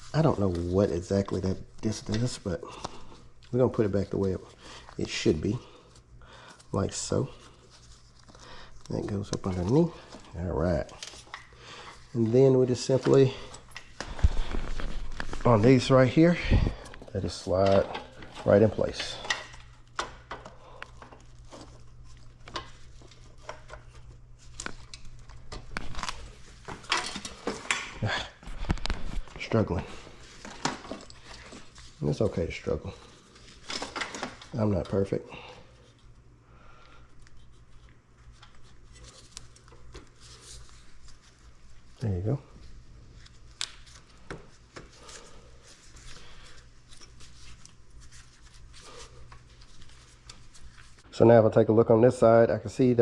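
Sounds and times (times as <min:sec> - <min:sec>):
rustling of wires: 0:00.0 - 0:51.1
steady low hum: 0:00.0 - 0:53.0.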